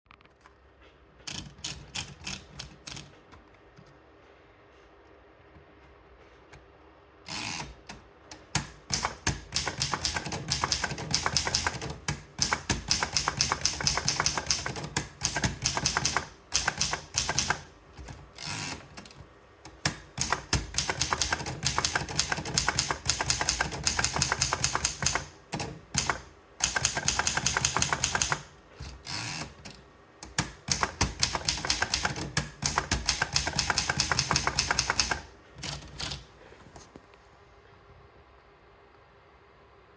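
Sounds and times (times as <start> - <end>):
manual typewriter keystrokes: 1.2 - 3.9, 7.4 - 36.3.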